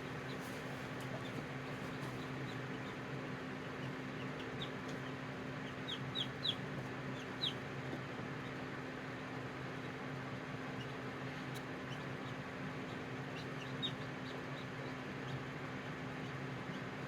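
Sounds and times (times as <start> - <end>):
chicks peeping: 3.6 - 7.6, 11.9 - 15.4.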